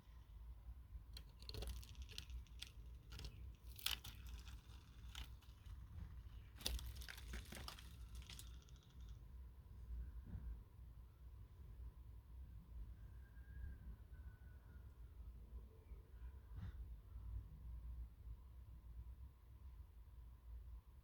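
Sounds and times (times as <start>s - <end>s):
termites crackling and clicking: 1.1s - 9.2s.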